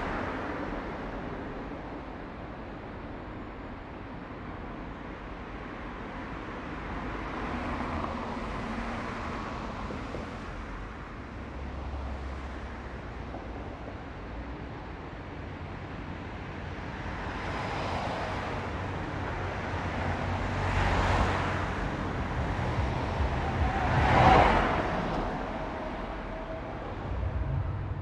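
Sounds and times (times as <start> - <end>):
steady traffic rumble: 0.0 - 28.0
vehicles passing by: 16.5 - 28.0.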